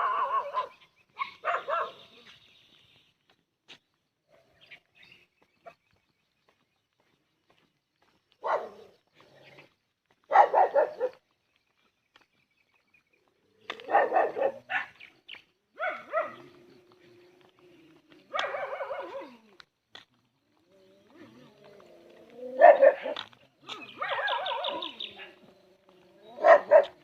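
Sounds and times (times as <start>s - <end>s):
puppy yapping: 18.3s - 19.4s, 22.4s - 25.4s, 26.3s - 27.0s.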